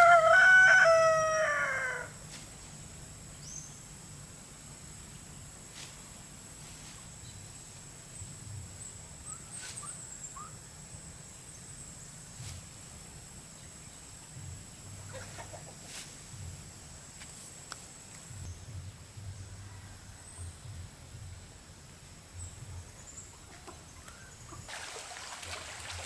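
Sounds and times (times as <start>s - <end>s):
chickens clucking: 15.0s - 16.1s.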